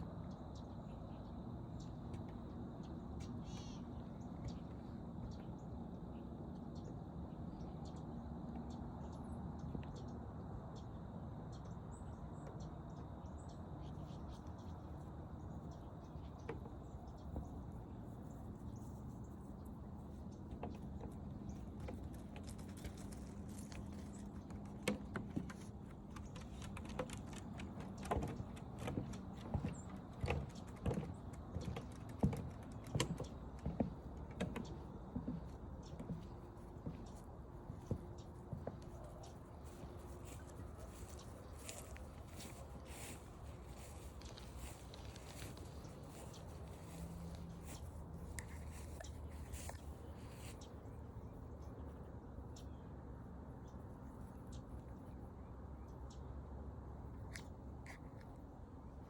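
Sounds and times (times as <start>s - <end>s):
low outdoor background: 0.0s - 59.0s
footsteps on forest trail: 21.7s - 50.7s.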